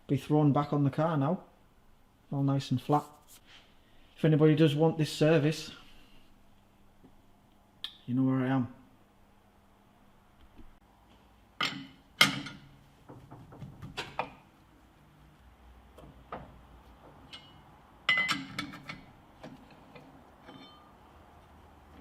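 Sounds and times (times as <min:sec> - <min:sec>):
metal tools clinking: 0:17.2 - 0:21.1.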